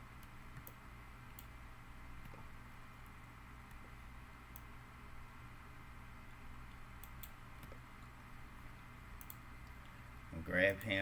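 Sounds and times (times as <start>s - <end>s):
steady background hum: 0.0s - 11.0s
computer mouse clicks: 0.2s - 1.6s, 2.2s - 3.9s, 4.5s - 4.7s, 6.7s - 7.9s, 9.2s - 10.0s.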